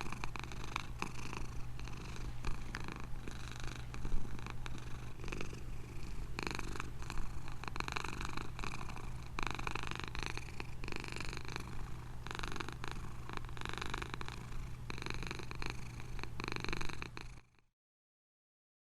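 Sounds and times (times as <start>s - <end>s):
cat purring: 0.0s - 17.6s.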